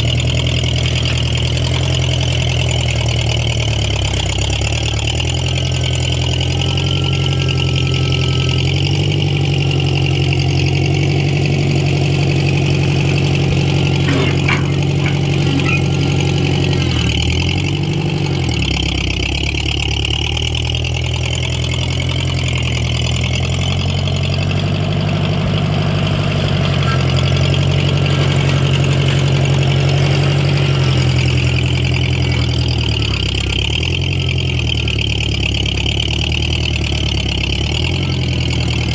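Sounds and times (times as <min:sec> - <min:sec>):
tractor engine running: 0:00.0 - 0:38.9
short metallic clanks: 0:13.9 - 0:17.2.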